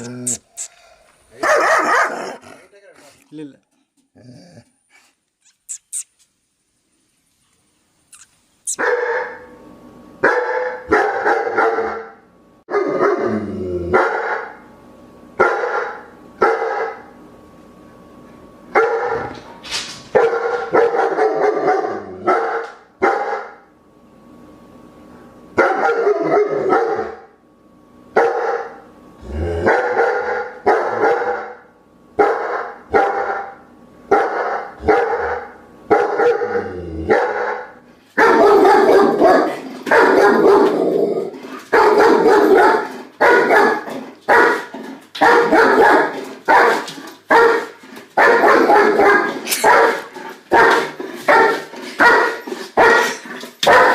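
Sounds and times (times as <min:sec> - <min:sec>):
dog barking: 0:01.4 - 0:02.5, 0:08.7 - 0:09.5, 0:10.2 - 0:13.3, 0:13.9 - 0:14.6, 0:15.4 - 0:17.1, 0:18.7 - 0:19.3, 0:20.1 - 0:23.6, 0:25.6 - 0:27.3, 0:28.2 - 0:28.8, 0:29.7 - 0:40.8, 0:41.7 - 0:53.9.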